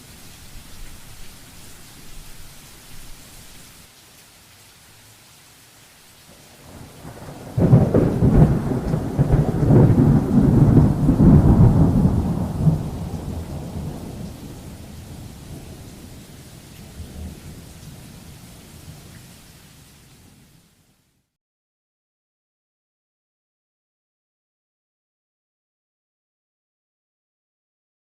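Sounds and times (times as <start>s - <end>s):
steady rain: 0.0s - 21.4s
thunder rumbling: 6.6s - 16.2s.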